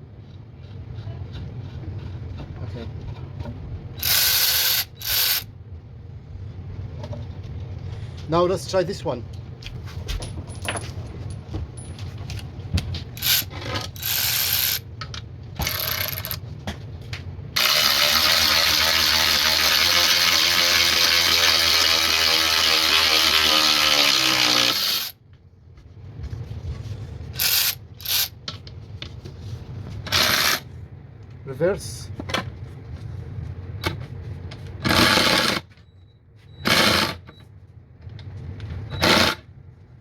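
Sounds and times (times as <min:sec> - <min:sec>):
cordless ratchet wrench running: 0:04.0 - 0:05.5, 0:13.2 - 0:14.8, 0:15.6 - 0:16.4, 0:17.6 - 0:25.2, 0:27.4 - 0:28.3, 0:30.1 - 0:30.6.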